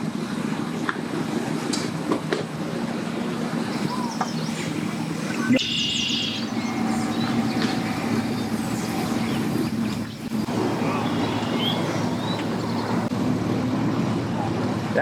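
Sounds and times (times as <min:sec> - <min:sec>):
bird chirps: 0:03.7 - 0:13.1
rushing noise: 0:03.7 - 0:13.4
engine running: 0:03.7 - 0:14.0.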